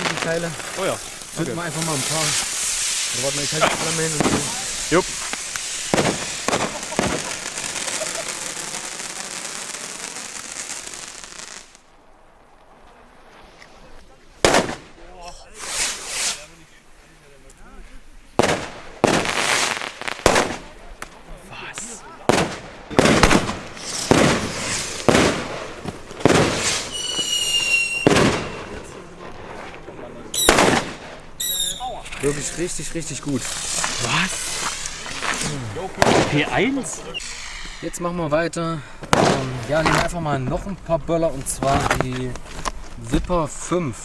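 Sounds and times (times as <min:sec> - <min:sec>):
torch lighter hissing: 0:00.0 - 0:09.6, 0:15.5 - 0:16.5, 0:30.4 - 0:38.0
firecracker bangs: 0:00.0 - 0:11.9, 0:14.4 - 0:16.5, 0:18.4 - 0:38.4, 0:39.0 - 0:40.3
high whistle: 0:26.9 - 0:28.8, 0:31.4 - 0:32.0, 0:37.0 - 0:37.9.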